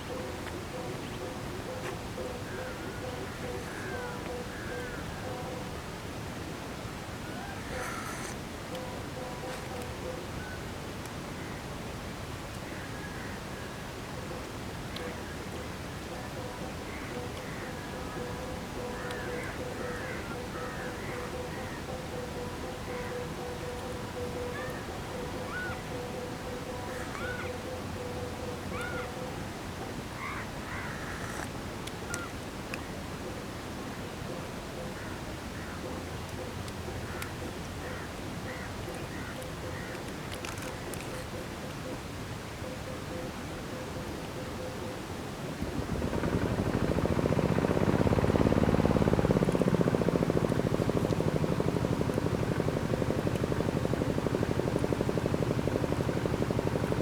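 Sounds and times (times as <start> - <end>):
rising and falling animal calls: 16.3 - 29.4
small engine running: 45.6 - 57.0.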